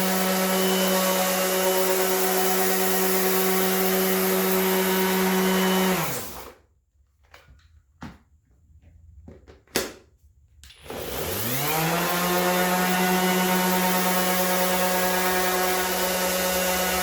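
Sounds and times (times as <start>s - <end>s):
orbital sander running: 0.0s - 6.5s, 11.0s - 17.0s.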